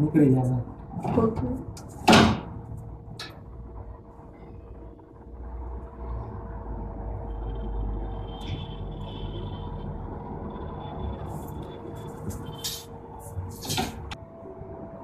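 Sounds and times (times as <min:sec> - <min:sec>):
washing machine running: 0:09.9 - 0:15.0.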